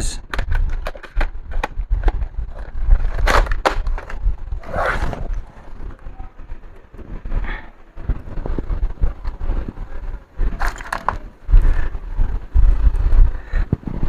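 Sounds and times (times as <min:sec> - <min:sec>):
handling bumps: 0:00.3 - 0:14.0.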